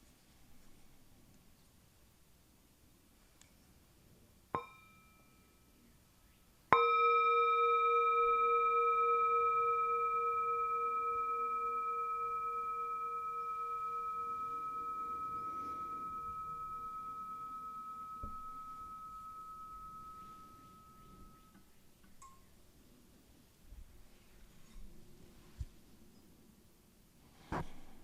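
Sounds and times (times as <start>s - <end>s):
singing bowl ringing: 4.6s - 5.7s, 6.7s - 22.4s.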